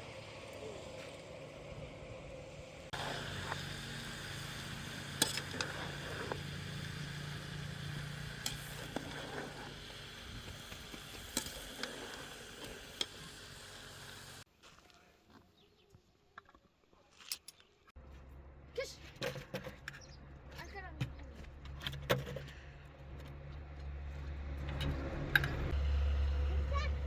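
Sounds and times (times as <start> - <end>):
food sizzling in a pan: 3.0 - 14.4.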